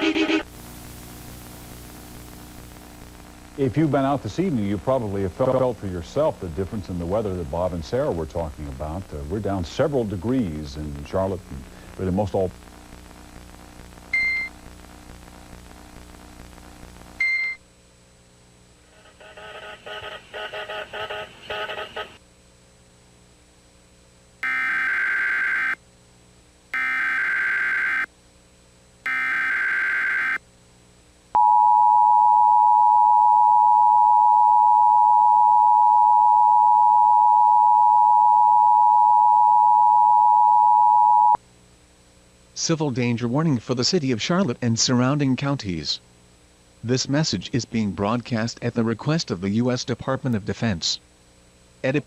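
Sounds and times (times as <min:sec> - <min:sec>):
short beep: 0:14.2 - 0:14.5
screeching data bursts: 0:19.0 - 0:22.2
stuttering garbled tones: 0:19.0 - 0:22.2.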